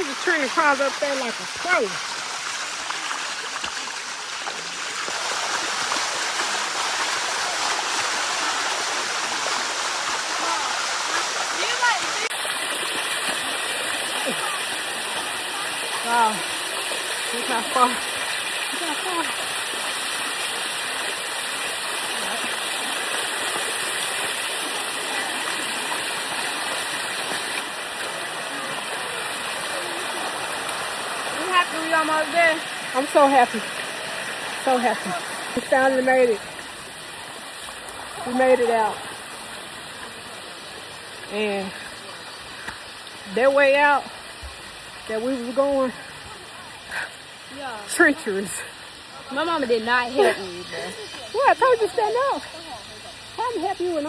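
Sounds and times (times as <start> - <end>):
waterfall running over rock: 0.0 - 54.0.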